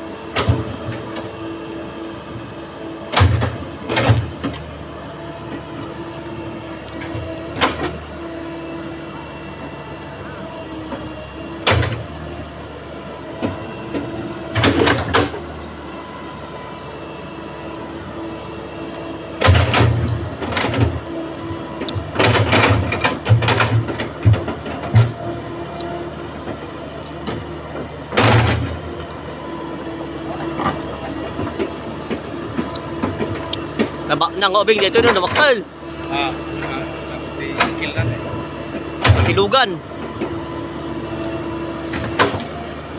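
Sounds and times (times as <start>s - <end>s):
diesel engine running: 0.0s - 42.9s
machine clanking and rattling: 3.1s - 4.6s, 13.4s - 15.5s, 19.4s - 21.1s, 21.8s - 25.2s, 27.2s - 35.6s, 38.8s - 40.4s.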